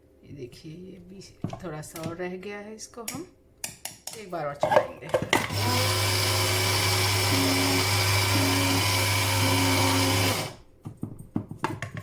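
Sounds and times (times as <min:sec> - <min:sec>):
electric grinder running: 0:05.4 - 0:10.6.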